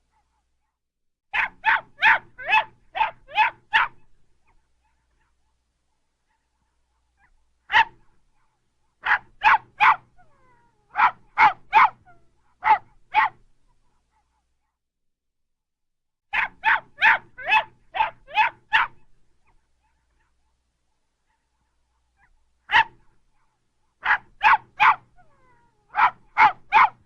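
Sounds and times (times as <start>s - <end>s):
small dog barking: 1.3s - 5.4s, 7.2s - 8.2s, 9.0s - 13.5s, 16.3s - 20.4s, 22.1s - 27.0s.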